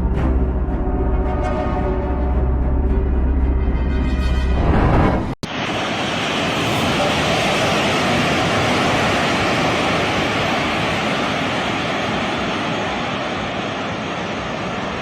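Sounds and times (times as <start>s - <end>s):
steady rushing roar: 4.3s - 15.0s.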